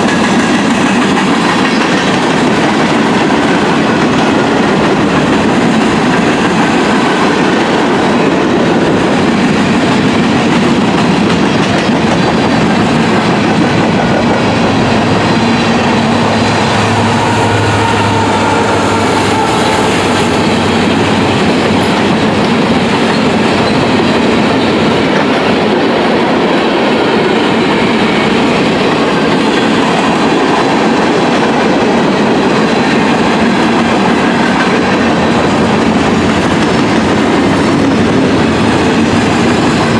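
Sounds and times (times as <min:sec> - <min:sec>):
train wheels clicking over rail joints: 0:00.0 - 0:39.9
high wheel squeal: 0:15.8 - 0:20.7.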